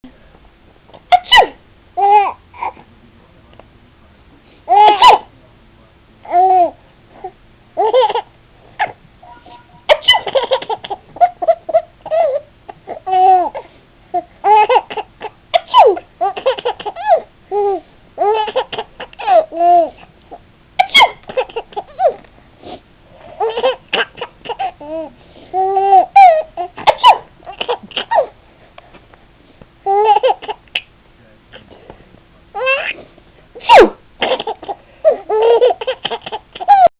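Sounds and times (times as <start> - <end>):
baby laughing: 1.1 - 2.8, 4.7 - 5.3, 7.8 - 9.0, 9.9 - 20.1, 20.8 - 22.2, 23.4 - 28.3, 29.8 - 30.8, 32.6 - 33.0, 33.7 - 36.9
baby babbling: 2.0 - 2.8, 6.2 - 8.9, 10.1 - 13.6, 14.2 - 20.1, 23.4 - 26.9, 29.8 - 30.6, 32.6 - 33.0
adult sneezing: 33.6 - 34.4.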